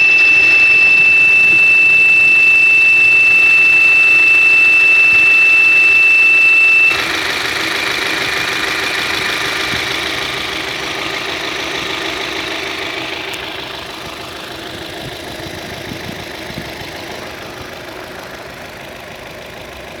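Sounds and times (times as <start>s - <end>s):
high-pitched whistle: 0.0s - 7.3s
car engine running: 0.0s - 20.0s.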